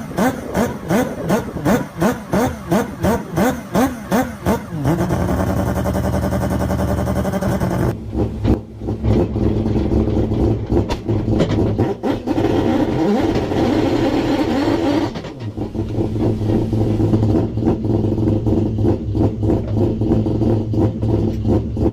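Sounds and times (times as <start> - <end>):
rotary engine revving: 0.0 - 21.9.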